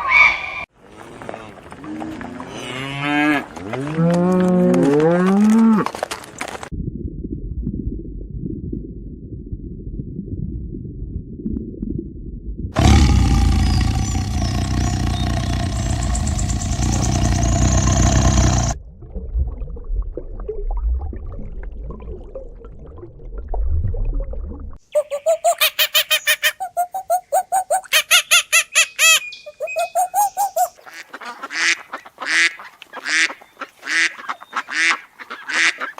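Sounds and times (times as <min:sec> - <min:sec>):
low rumbling: 0:12.8 - 0:19.0
waterfowl honking and quacking: 0:30.7 - 0:35.9.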